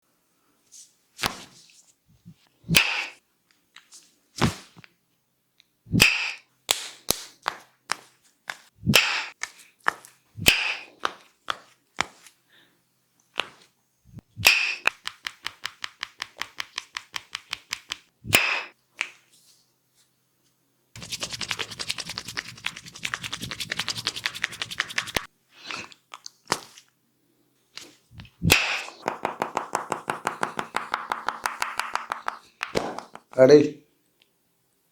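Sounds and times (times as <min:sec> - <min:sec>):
massage slaps and claps: 0:06.0 - 0:12.3, 0:14.4 - 0:19.2, 0:21.0 - 0:25.3, 0:28.4 - 0:33.7
quick even tapping: 0:21.0 - 0:25.3, 0:28.9 - 0:33.5.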